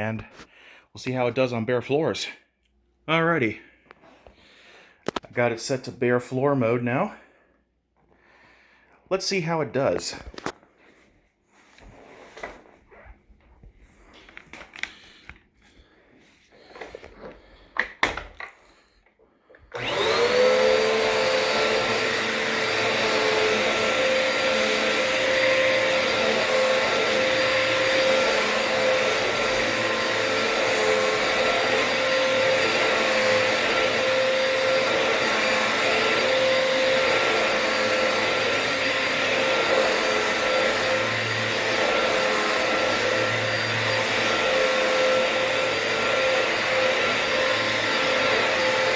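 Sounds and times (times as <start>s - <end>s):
vacuum cleaner motor whining: 19.4s - 48.9s.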